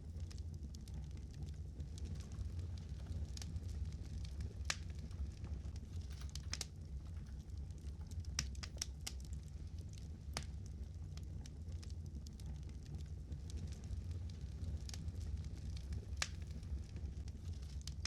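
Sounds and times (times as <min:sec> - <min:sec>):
fire crackling and popping: 0:00.0 - 0:18.0
low rumble: 0:00.0 - 0:18.0.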